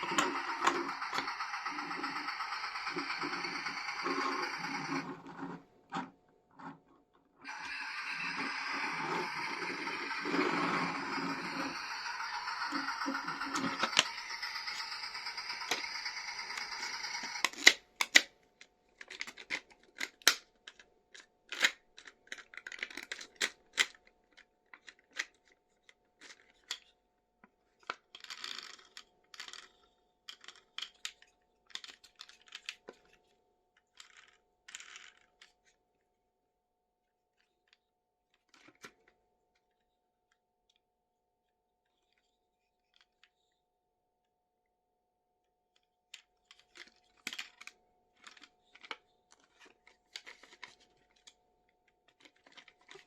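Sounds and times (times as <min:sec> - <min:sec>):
plastic parts clicking and tapping: 0:19.0 - 0:25.5.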